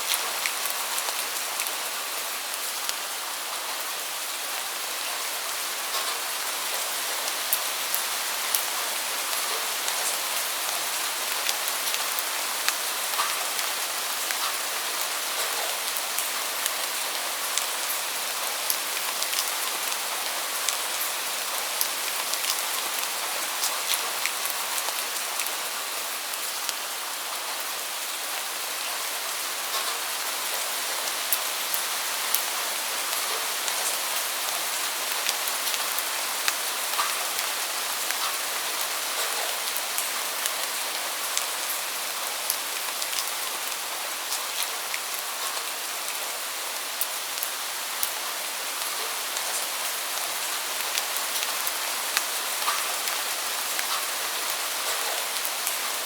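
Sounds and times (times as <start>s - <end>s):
steady rain: 0.0s - 56.0s.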